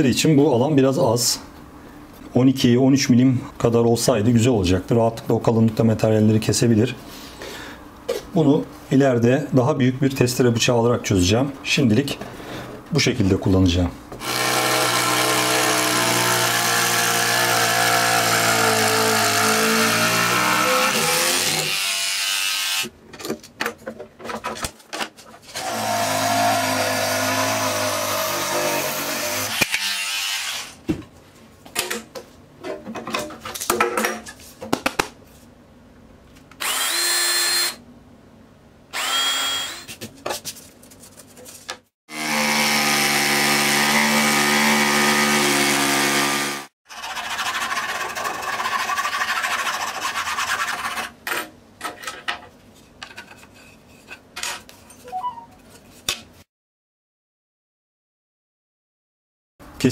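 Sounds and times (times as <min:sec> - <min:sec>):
small table saw motor running: 0:36.6 - 0:37.8, 0:39.0 - 0:39.9.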